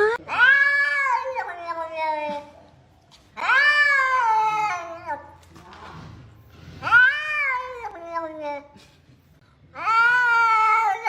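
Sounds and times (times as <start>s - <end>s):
cat meowing: 0.3s - 2.5s, 3.4s - 5.4s, 6.8s - 8.6s, 9.8s - 11.0s.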